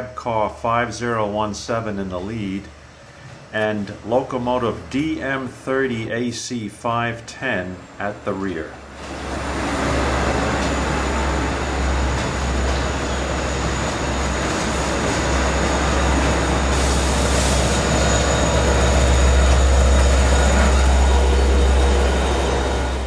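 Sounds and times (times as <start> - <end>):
rail noise: 0.8 - 23.0
diesel locomotive engine hum: 6.8 - 23.0.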